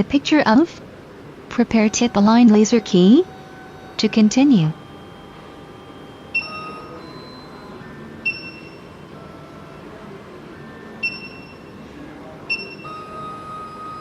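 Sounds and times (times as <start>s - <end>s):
faint motor whine: 0.0s - 14.0s
short electronic beeps: 4.0s - 9.0s, 11.0s - 11.8s, 12.5s - 14.0s.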